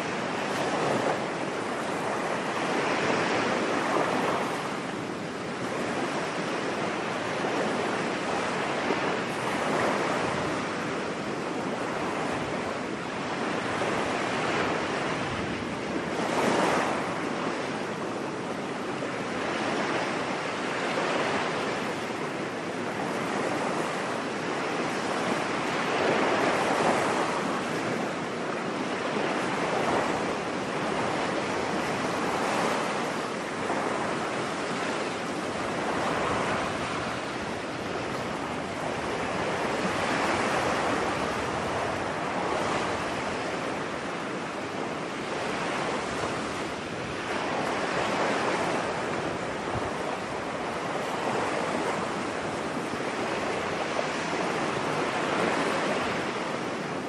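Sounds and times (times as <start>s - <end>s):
ocean surf on beach: 0.0s - 57.0s.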